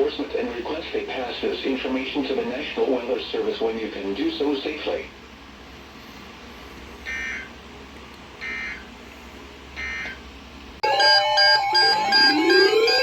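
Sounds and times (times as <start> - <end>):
faint radio hiss: 0.0 - 10.1
data tone bursts: 10.8 - 13.0.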